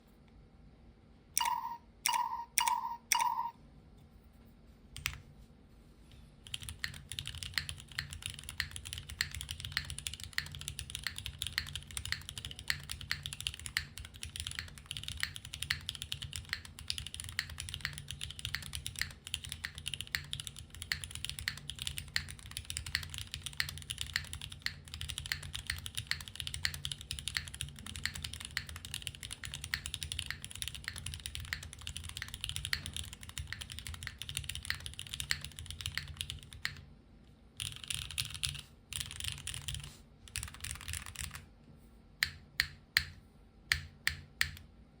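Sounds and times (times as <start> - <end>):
fast keyboard typing: 1.4 - 3.5, 5.0 - 5.2, 6.4 - 36.9, 37.6 - 41.5
short beeps: 1.4 - 3.6.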